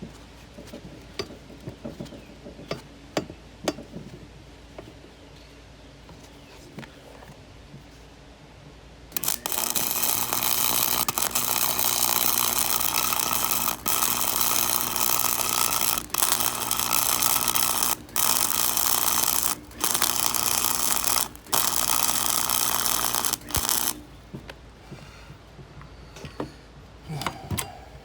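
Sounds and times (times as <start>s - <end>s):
welder crackling sizzle: 9.1s - 24.2s
welder hum: 9.1s - 24.2s.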